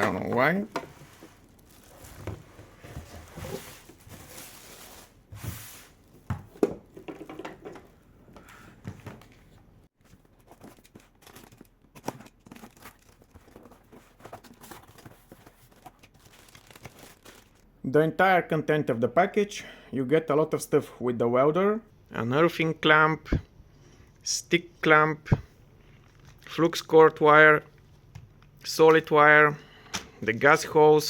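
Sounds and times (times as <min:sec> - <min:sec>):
cardboard and plastic crinkling: 0:00.0 - 0:06.3, 0:10.0 - 0:17.6.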